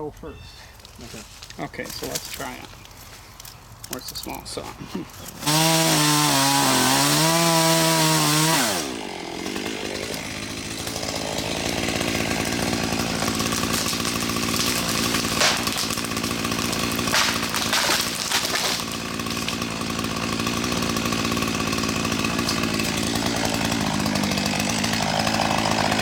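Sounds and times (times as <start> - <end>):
chainsaw cutting into tree: 1.9 - 26.0.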